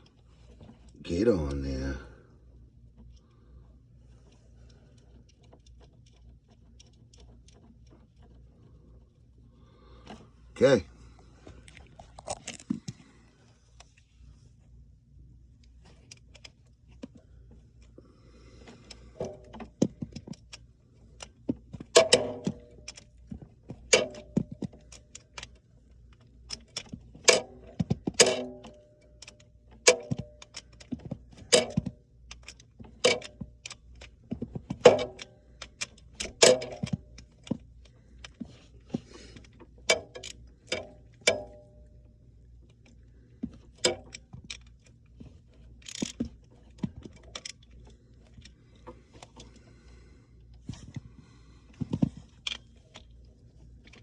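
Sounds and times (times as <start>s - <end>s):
metal tools clicking and knocking: 21.8s - 25.6s, 26.5s - 37.6s, 39.4s - 41.9s.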